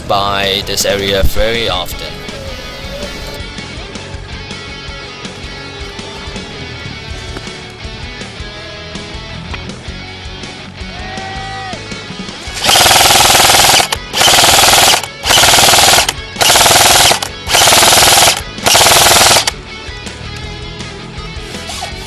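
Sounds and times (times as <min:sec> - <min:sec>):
background music: 0:00.0 - 0:22.0
harsh noise bursts: 0:12.6 - 0:19.5.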